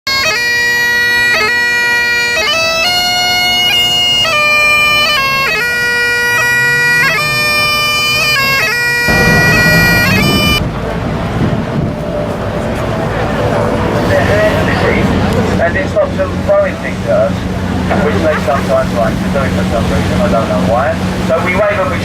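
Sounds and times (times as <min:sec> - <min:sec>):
bagpipes playing: 0:00.1 - 0:10.6
rumbling noise: 0:09.1 - 0:16.4.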